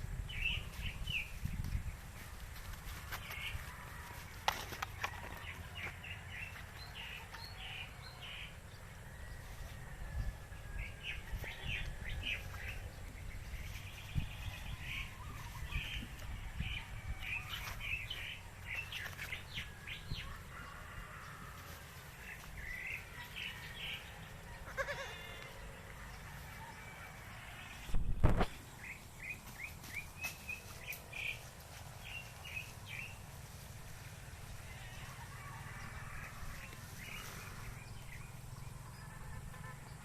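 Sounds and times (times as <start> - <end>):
low bleat-like call: 24.7 - 25.6.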